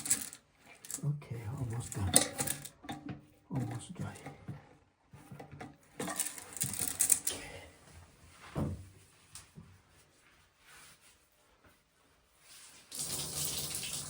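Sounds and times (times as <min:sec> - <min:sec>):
towel rustling and scraping in tank: 0:08.0 - 0:12.9.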